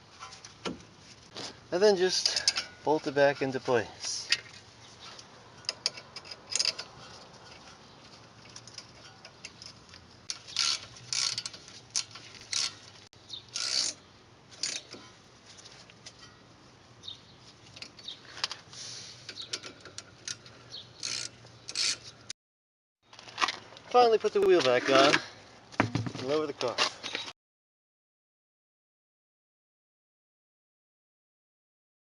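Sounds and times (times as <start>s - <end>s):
ratchet wrench clicking: 10.3s - 12.8s, 13.5s - 14.0s, 21.0s - 22.1s.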